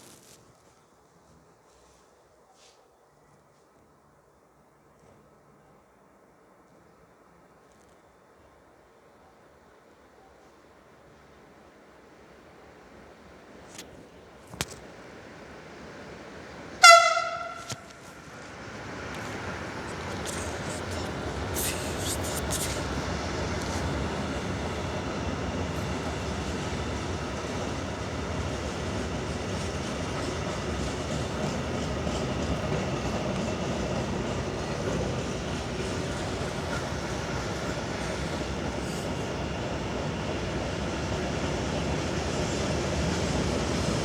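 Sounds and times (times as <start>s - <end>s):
train noise: 3.5s - 44.0s
high-pitched locomotive horn toot: 16.8s - 18.2s.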